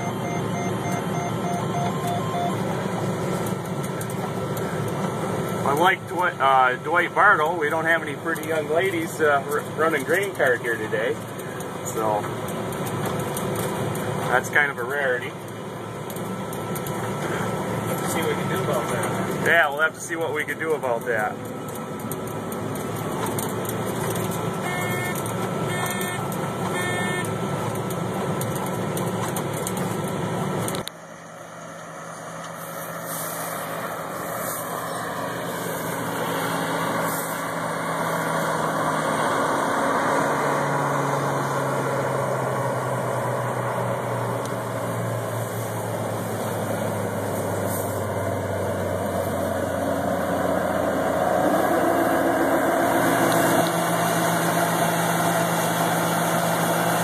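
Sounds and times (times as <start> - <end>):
short electronic beeps: 0.0 - 2.6, 24.6 - 27.3
combine engine and machinery noise: 0.0 - 57.0.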